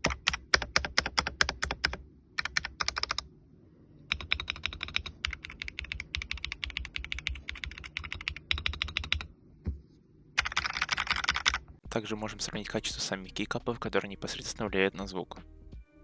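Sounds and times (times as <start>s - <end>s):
mechanical keyboard typing: 0.0s - 3.3s, 4.1s - 9.3s, 10.4s - 11.6s.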